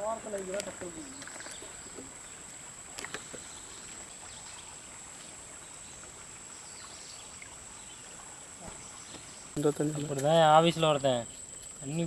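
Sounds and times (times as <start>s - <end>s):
crickets chirping: 0.0s - 12.0s
faint outdoor hiss: 0.0s - 12.0s.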